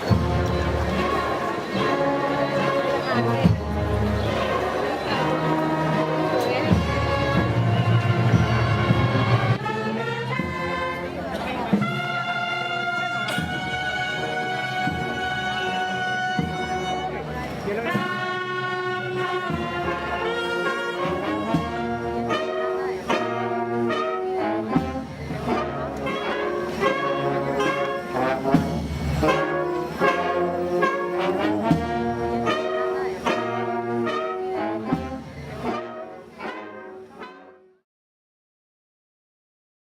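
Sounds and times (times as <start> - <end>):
brass band playing: 0.0 - 37.8
drum beats: 13.2 - 14.1, 30.8 - 32.6.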